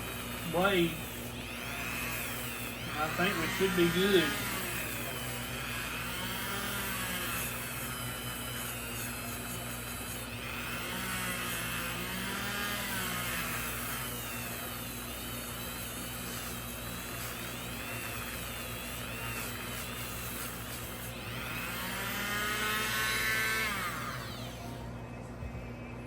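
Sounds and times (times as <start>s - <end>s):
rotary tool wire brush whirring: 0.0s - 24.9s.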